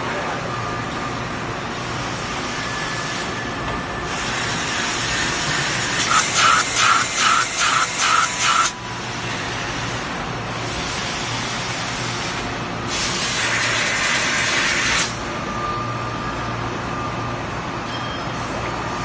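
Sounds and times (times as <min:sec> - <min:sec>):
burst of compressed air hissing: 0:05.7 - 0:08.7.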